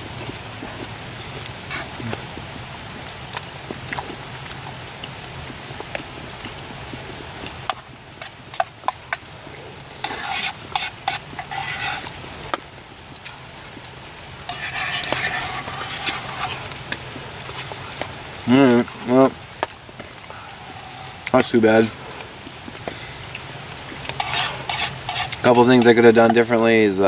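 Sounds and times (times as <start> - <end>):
steady rain: 0.0 - 27.0
spoon scraping metal cup: 9.9 - 12.1, 14.5 - 16.8, 24.1 - 26.4.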